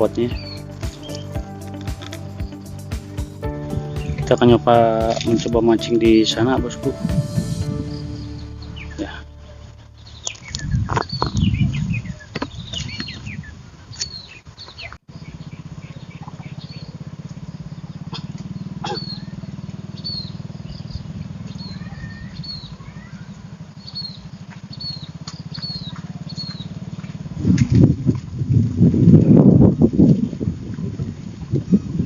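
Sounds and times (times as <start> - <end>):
small birds chirping: 0.0 - 4.6, 10.0 - 27.3
low rumble: 6.4 - 12.1
low motor hum: 6.9 - 12.0.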